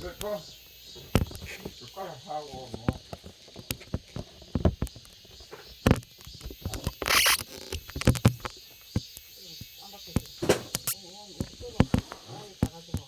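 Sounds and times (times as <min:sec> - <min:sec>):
objects being handled clicking: 0:02.6 - 0:09.3, 0:10.2 - 0:13.0.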